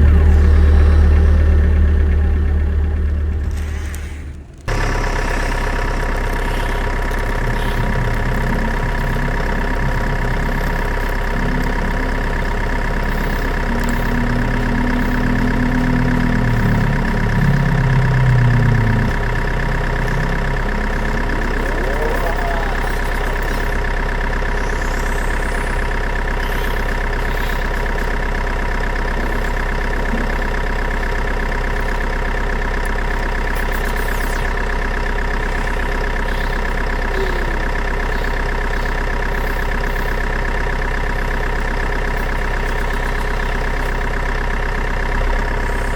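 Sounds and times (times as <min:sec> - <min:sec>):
deep rumble: 0:00.0 - 0:31.6
engine idling drone: 0:00.0 - 0:45.9.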